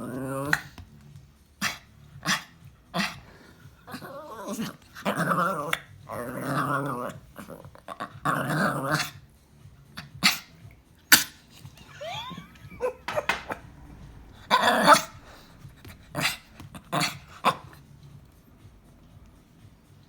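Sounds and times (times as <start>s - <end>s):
dog barking: 1.6s - 3.2s
dog growling: 1.6s - 9.2s, 12.8s - 18.2s
dog whining: 11.8s - 17.7s.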